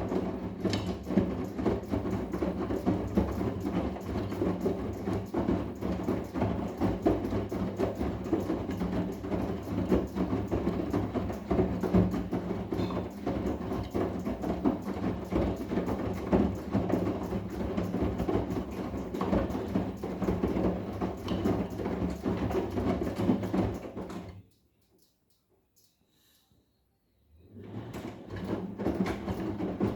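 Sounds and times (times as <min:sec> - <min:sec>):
drum thuds and sloshing: 0:00.0 - 0:24.2, 0:28.3 - 0:29.9.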